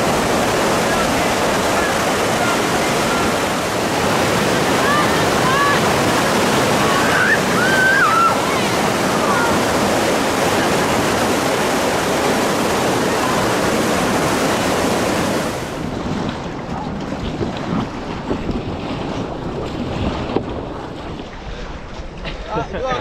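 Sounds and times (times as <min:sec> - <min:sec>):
rushing whitewater rapids: 0:00.0 - 0:16.2
water sloshing and splashing: 0:00.0 - 0:22.4
wind on microphone: 0:00.0 - 0:22.7.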